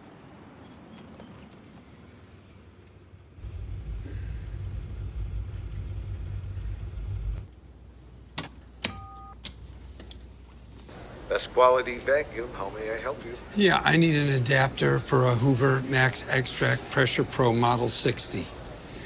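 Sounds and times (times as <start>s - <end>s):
low steady vehicle rumble: 2.6s - 8.8s
telephone keypad beep: 8.9s - 9.4s.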